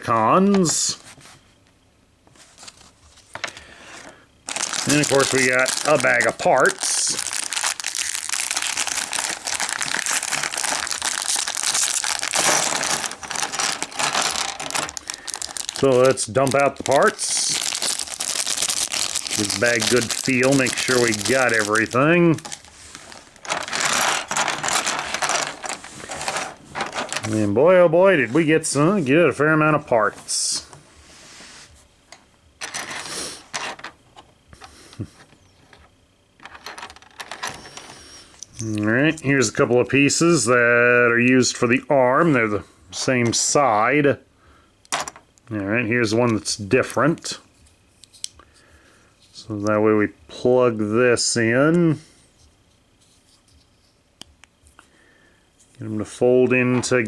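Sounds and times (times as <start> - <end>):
plastic bag crinkling: 4.4 - 27.5.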